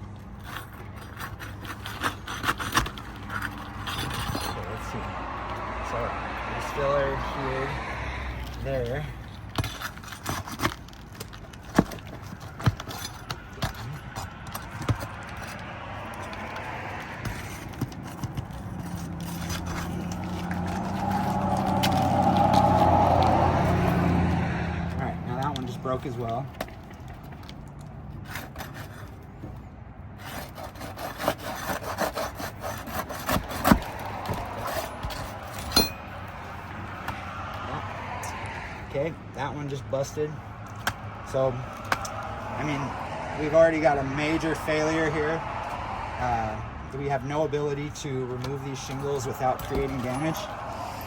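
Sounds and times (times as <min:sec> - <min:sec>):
hand tool clicking and scraping: 0:00.0 - 0:05.0, 0:08.4 - 0:24.0, 0:25.3 - 0:29.4, 0:30.2 - 0:37.6, 0:41.7 - 0:42.8.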